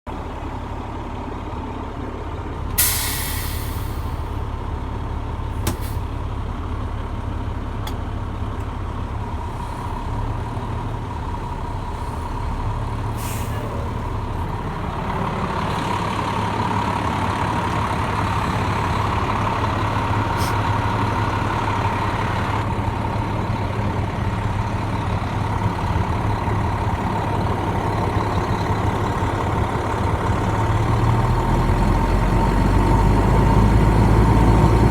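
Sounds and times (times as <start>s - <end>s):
air hiss: 2.8s - 4.2s
fire engine pumping: 2.8s - 4.4s, 11.5s - 30.5s.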